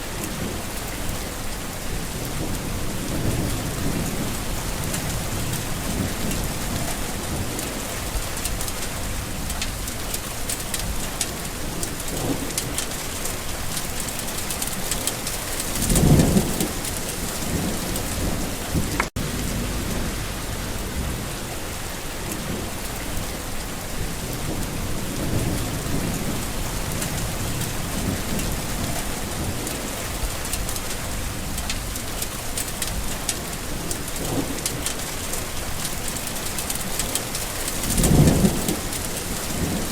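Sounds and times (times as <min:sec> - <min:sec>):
rain pattering: 0:00.0 - 0:39.9
thunder rumbling: 0:00.0 - 0:39.9.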